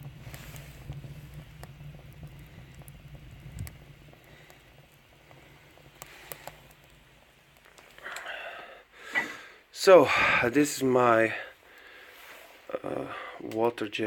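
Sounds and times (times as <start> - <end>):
low draft rumble: 0.0 - 7.6
fire popping: 0.0 - 14.0
wood fire crackling: 0.0 - 14.0.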